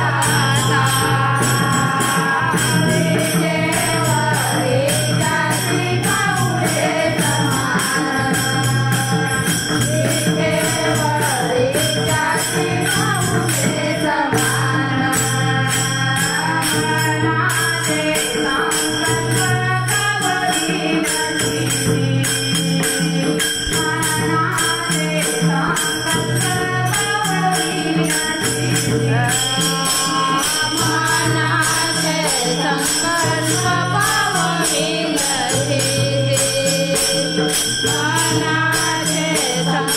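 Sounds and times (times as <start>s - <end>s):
hand cymbals jingling: 0.0s - 39.9s
voices chanting devotional song: 0.0s - 39.9s.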